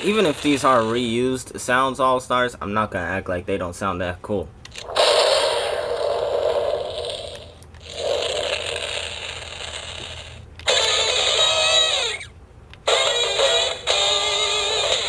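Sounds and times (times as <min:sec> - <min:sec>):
toy rushing blasts: 0:04.7 - 0:15.0.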